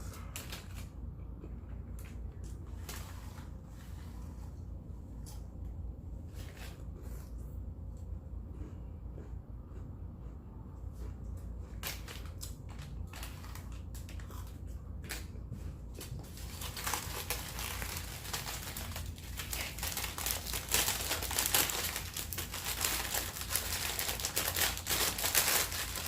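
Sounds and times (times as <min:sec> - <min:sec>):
chip bag crinkling: 0:11.8 - 0:15.3, 0:16.0 - 0:26.0.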